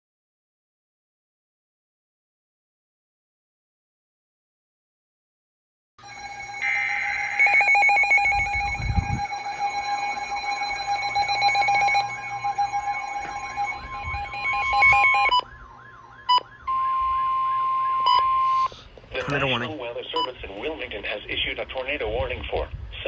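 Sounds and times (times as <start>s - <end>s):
buzzing data header bursts: 6.0s - 15.3s
steady alarm tones: 6.0s - 20.4s
warbling alert tone: 6.1s - 15.4s.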